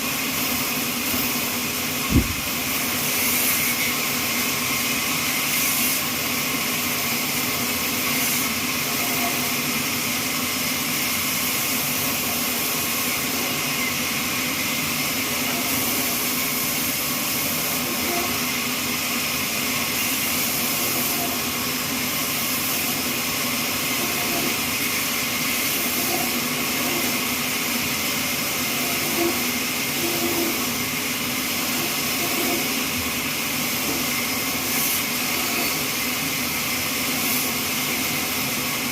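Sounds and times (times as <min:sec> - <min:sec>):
band sawmill cutting log: 0:00.2 - 0:38.9.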